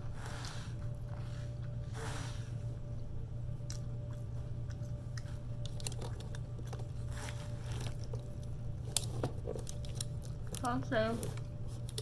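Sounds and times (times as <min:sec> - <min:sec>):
low electrical hum: 0:00.0 - 0:12.0
person chewing food: 0:02.8 - 0:10.6.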